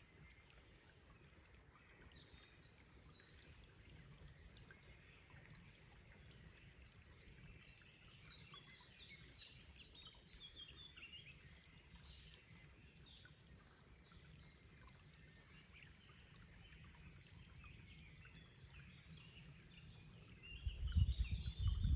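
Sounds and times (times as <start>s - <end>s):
bird song with descending notes: 18.8s - 21.9s.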